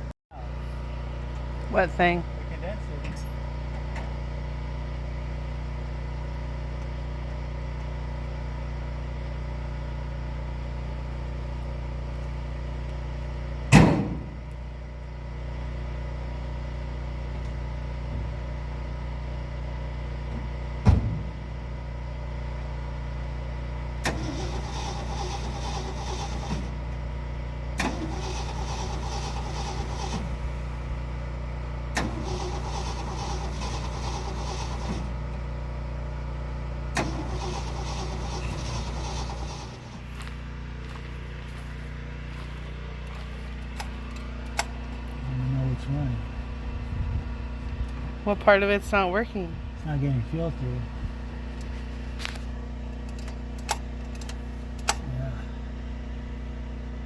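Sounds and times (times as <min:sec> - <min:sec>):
starter cranking engine: 0:24.0 - 0:26.8, 0:27.8 - 0:30.8, 0:31.9 - 0:35.2, 0:36.9 - 0:40.0
steady low hum: 0:28.4 - 0:57.0.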